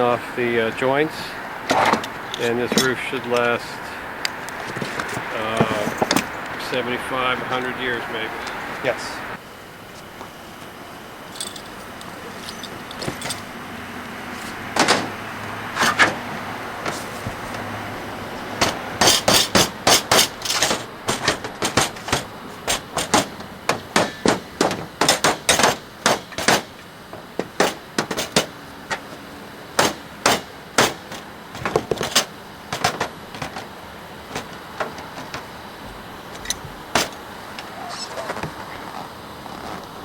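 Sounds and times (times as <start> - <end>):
hammer striking copper sheet: 18.6 - 26.8, 27.4 - 28.5, 29.8 - 33.6.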